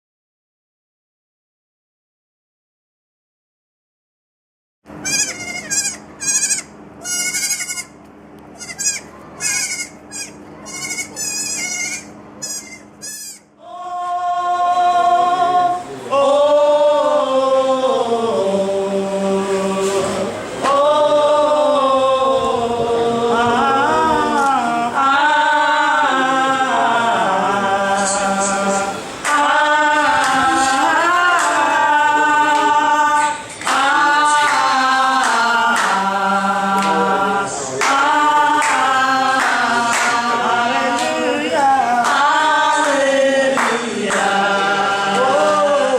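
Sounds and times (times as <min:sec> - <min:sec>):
goat bleating: 0:05.0 - 0:08.0, 0:08.6 - 0:13.5
choir singing: 0:13.6 - 0:45.9.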